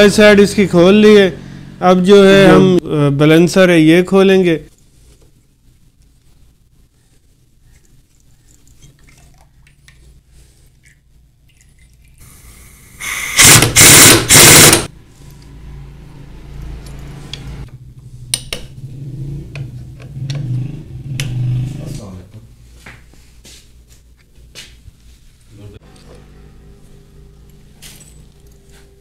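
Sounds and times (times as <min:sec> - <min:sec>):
impact wrench bursts: 0:13.0 - 0:14.9.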